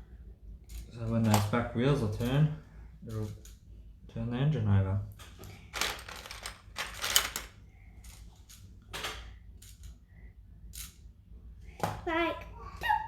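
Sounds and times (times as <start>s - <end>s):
plastic parts clicking and rattling: 0.7s - 1.6s, 3.1s - 3.6s, 5.1s - 10.0s.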